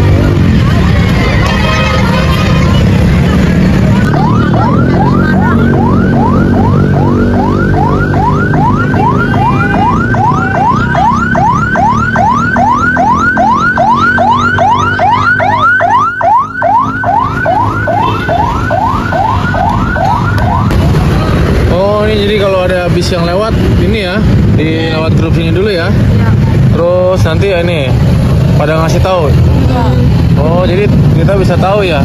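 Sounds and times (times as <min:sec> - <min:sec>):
electronic siren whooping: 0:00.0 - 0:22.4
heavy vehicle engine rumble: 0:00.0 - 0:32.0.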